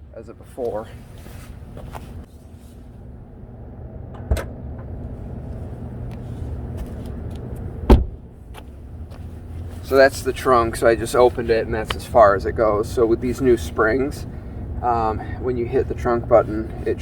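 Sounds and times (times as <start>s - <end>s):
steady low hum: 0.0s - 17.0s
trunk latch knocks: 7.9s - 8.2s.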